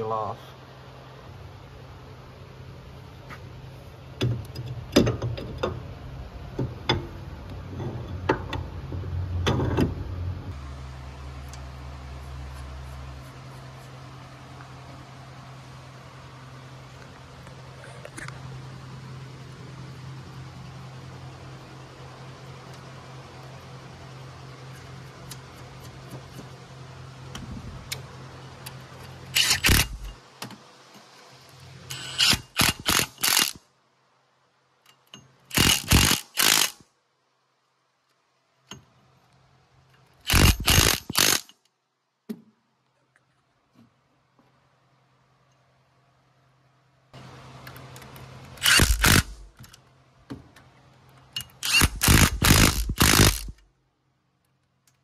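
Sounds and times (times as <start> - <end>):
steady low hum: 0.0 - 42.2, 42.8 - 54.6
tools clicking and knocking: 47.7 - 53.6.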